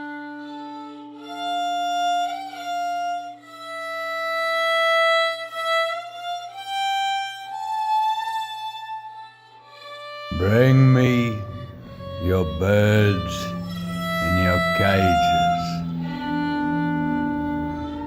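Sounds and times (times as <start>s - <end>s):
sliding melody of held notes: 10.3s - 18.0s
sustained low drone: 10.3s - 18.0s.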